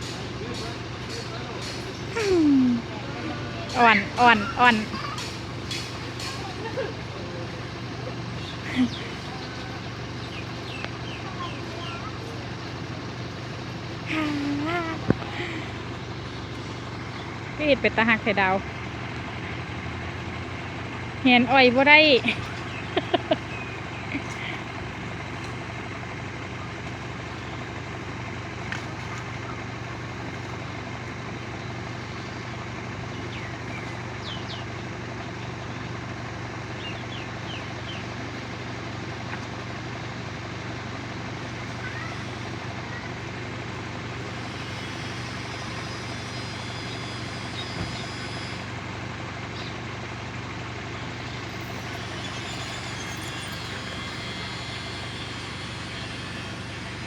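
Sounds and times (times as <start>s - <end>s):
low machine hum: 0.0s - 57.0s
faint bird chirps: 51.4s - 56.1s.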